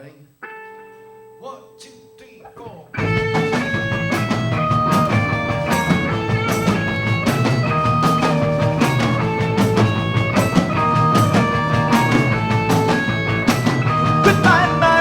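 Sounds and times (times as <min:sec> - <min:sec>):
rock band instrumental: 0:00.4 - 0:01.5, 0:02.5 - 0:15.0.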